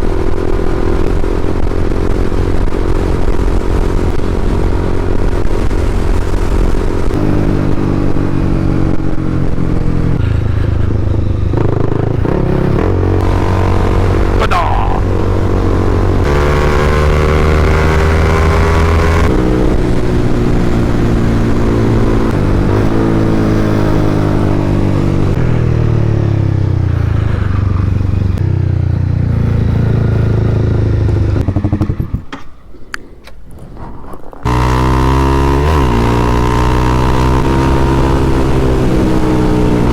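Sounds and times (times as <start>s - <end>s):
wind rush: 12.0s - 25.7s
motorcycle engine pulling under load: 29.8s - 32.8s, 33.6s - 39.9s.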